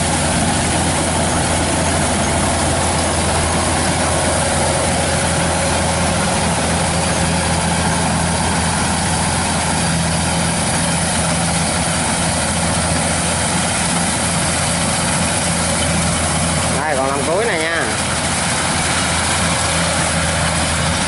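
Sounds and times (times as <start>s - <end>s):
combine harvester drone: 0.0s - 21.0s.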